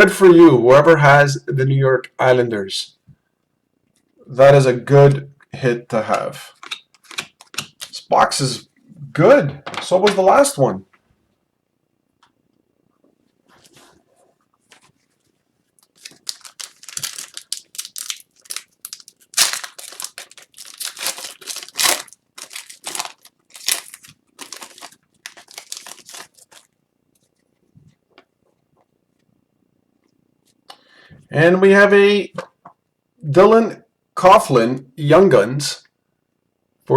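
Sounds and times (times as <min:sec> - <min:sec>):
foil wrapper tearing and crinkling: 0:06.5 - 0:08.0, 0:15.8 - 0:26.7.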